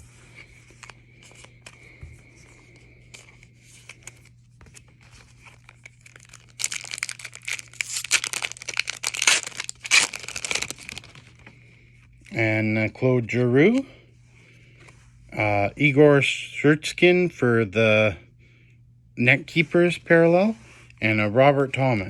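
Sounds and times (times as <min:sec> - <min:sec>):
plastic wrapper tearing and crinkling: 0:05.2 - 0:11.4.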